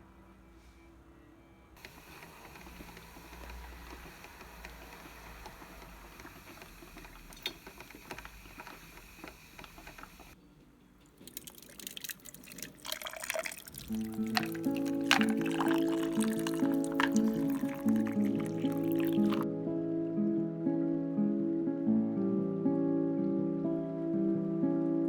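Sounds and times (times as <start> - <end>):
water running: 1.8 - 10.4, 11.1 - 19.4.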